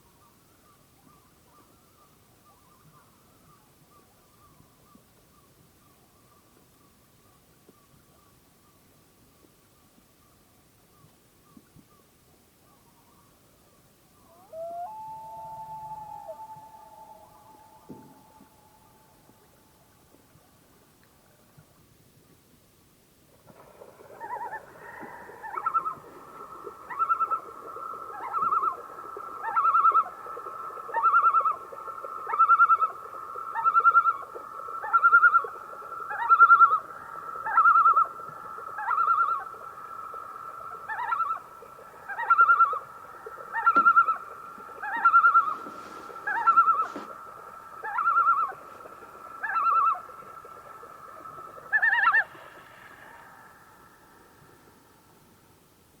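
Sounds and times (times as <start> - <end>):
loon calling: 14.3 - 19.6, 24.1 - 39.7, 40.4 - 54.0.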